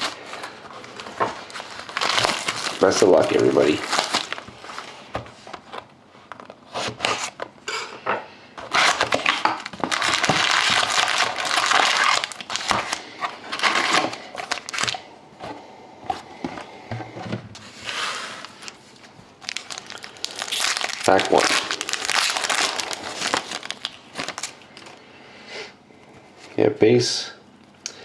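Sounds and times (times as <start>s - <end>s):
wrapping and cardboard tearing: 0.0s - 4.9s, 8.6s - 15.0s, 19.4s - 25.0s.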